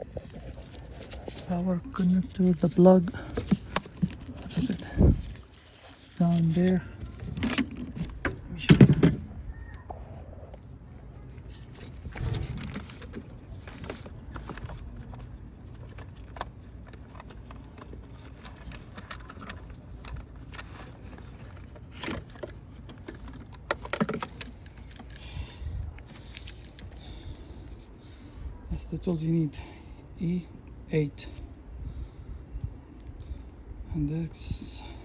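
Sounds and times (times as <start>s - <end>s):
handling clicks and rustles: 0.0s - 9.5s, 10.5s - 28.0s.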